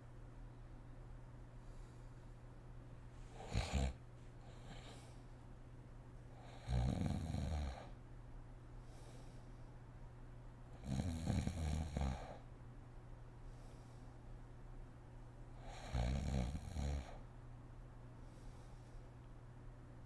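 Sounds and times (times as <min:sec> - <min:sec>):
faint breathing: 0:01.6 - 0:02.5, 0:03.2 - 0:05.5, 0:08.7 - 0:09.9, 0:13.4 - 0:14.5, 0:15.5 - 0:17.3, 0:18.1 - 0:19.3
woman snoring: 0:03.4 - 0:04.0, 0:06.4 - 0:07.9, 0:10.8 - 0:12.4, 0:15.6 - 0:17.2.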